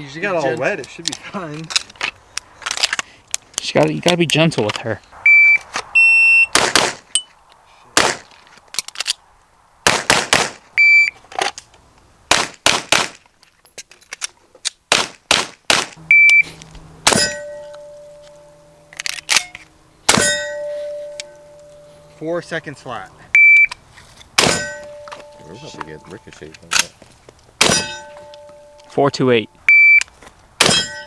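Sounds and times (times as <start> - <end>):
shot timer beeps: 5.3 - 6.5, 10.8 - 11.1, 16.1 - 16.5, 23.4 - 23.7, 29.7 - 30.1
gunshots: 6.5 - 7.1, 8.0 - 8.3, 9.8 - 10.6, 12.3 - 13.2, 14.9 - 16.0, 20.1 - 20.4, 24.4 - 24.8, 27.6 - 28.1
steel targets ringing: 16.0 - 23.1, 24.4 - 26.5, 27.6 - 29.3, 30.6 - 31.0.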